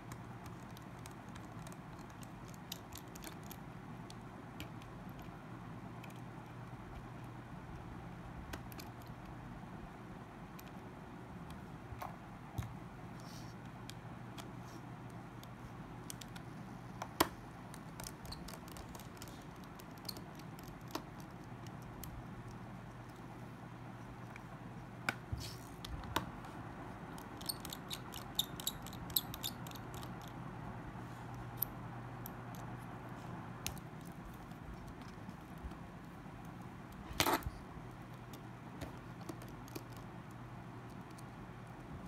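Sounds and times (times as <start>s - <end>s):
low steady hum: 0.0s - 42.0s
small phone parts clicking: 0.1s - 5.3s, 17.1s - 22.6s, 27.1s - 30.4s.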